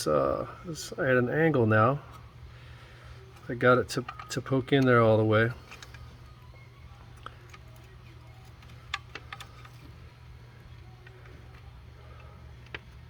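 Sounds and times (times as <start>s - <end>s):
steady low hum: 0.0s - 13.0s
small parts clicking and tapping: 5.6s - 11.7s.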